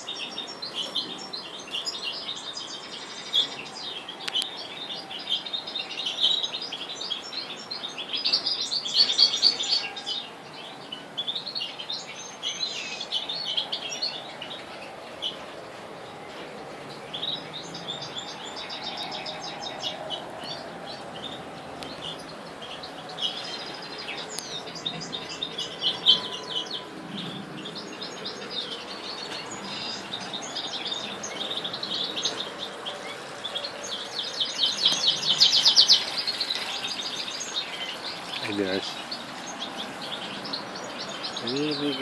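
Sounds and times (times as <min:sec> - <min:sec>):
nightingales chirping: 0:00.0 - 0:42.0.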